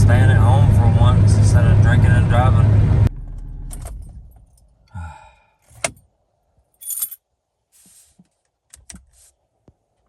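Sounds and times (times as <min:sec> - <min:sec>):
keys jingling: 0:06.8 - 0:07.2.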